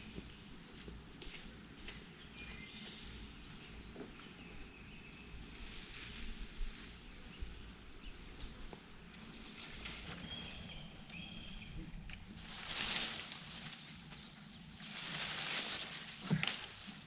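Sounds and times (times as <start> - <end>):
insect drone: 0.0 - 17.0
birds chirping: 7.2 - 17.0.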